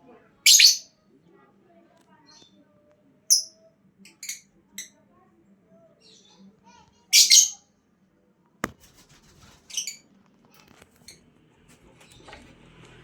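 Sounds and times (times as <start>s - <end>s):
lovebird squawking: 0.5s - 0.9s, 7.1s - 7.6s.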